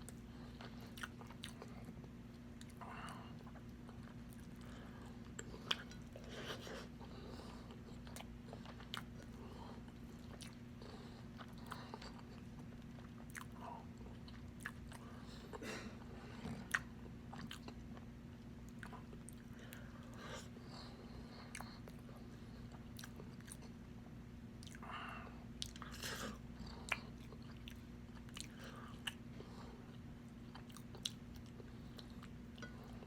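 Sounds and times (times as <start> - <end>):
close chewing and mouth clicks: 0.0 - 15.6, 16.3 - 24.9, 25.6 - 33.0
steady low hum: 0.0 - 33.0.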